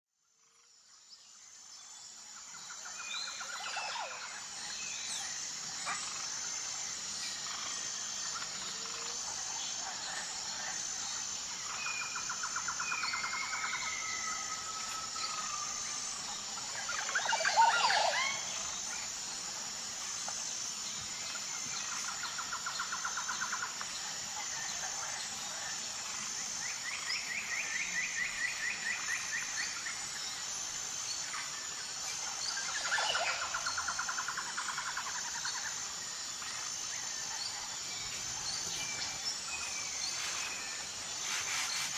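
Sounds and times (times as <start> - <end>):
pulsing high-pitched buzz: 1.6 - 41.9.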